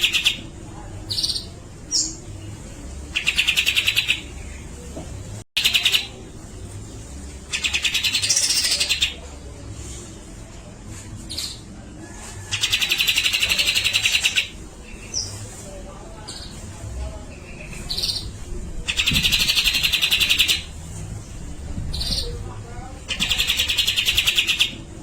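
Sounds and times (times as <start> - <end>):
bird singing rattling bursts: 18.9 - 20.7, 23.1 - 24.7.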